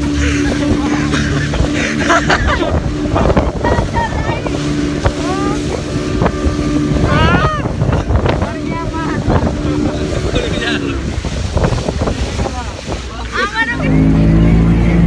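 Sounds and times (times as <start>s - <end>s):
speedboat engine humming: 0.0s - 15.0s
water rushing past hull: 0.0s - 15.0s
wind buffeting microphone: 0.0s - 15.0s.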